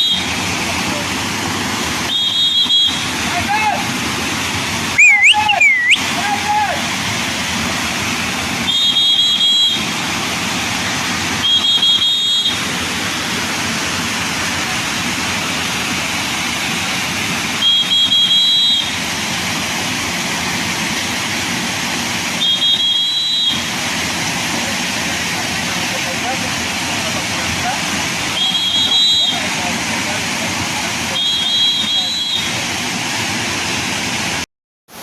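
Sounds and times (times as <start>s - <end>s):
fast-flowing floodwater rushing: 0.0s - 35.0s
high-pitched two-tone beeps: 5.0s - 6.0s.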